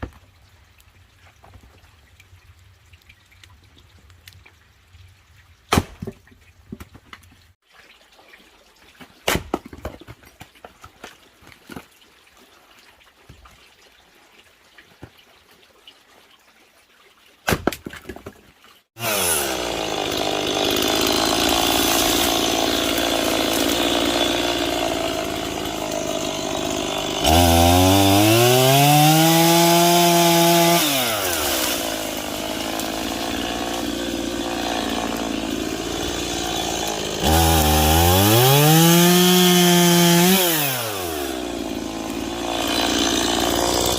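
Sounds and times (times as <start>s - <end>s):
chainsaw revving: 19.0s - 43.9s
chainsaw sputtering and idling: 19.0s - 43.9s.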